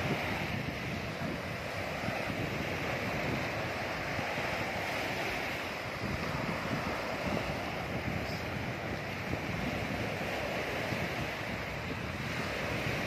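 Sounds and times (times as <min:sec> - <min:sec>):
sea waves washing onto beach: 0:00.0 - 0:13.0
wind buffeting microphone: 0:00.0 - 0:13.0.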